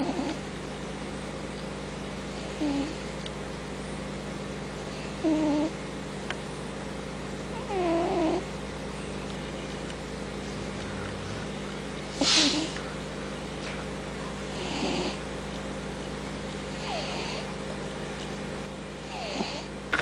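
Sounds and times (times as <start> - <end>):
steady low hum: 0.0 - 20.0
cat hissing: 10.6 - 12.9, 14.5 - 15.2, 16.7 - 17.5.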